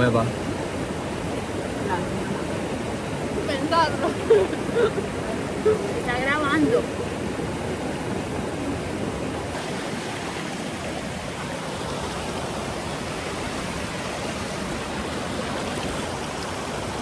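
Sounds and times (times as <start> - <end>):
flowing water rushing: 0.0 - 17.0.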